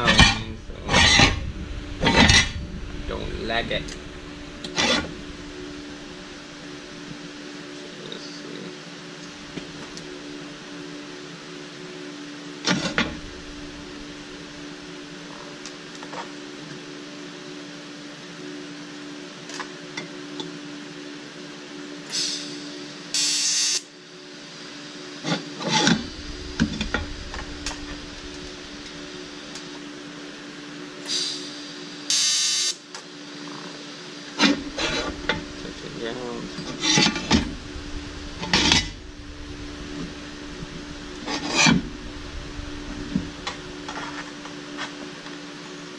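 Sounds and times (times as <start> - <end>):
welding arc hiss: 0.0 - 7.9, 12.8 - 15.2, 22.1 - 23.8, 25.9 - 29.9, 31.0 - 32.9, 34.3 - 45.1
welder electrical hum: 0.0 - 45.9.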